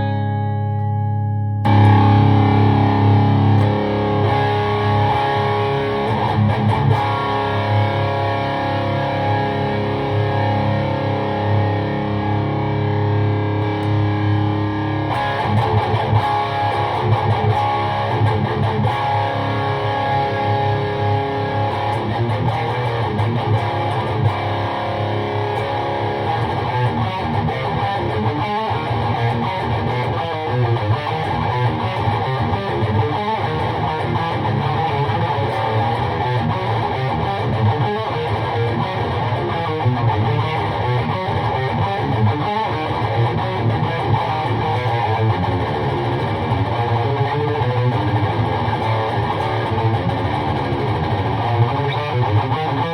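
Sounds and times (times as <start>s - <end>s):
electric guitar riffing through amp: 0.0s - 52.9s.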